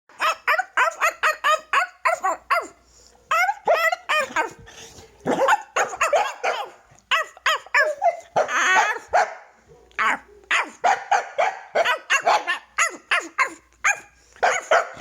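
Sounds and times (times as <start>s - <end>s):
dog barking high yaps: 5.3s - 15.0s.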